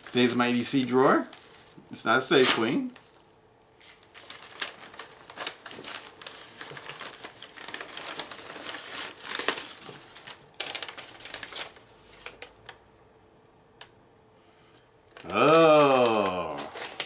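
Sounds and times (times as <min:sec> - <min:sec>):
packaging crinkling and rustling: 0:02.4 - 0:12.8, 0:15.1 - 0:17.0.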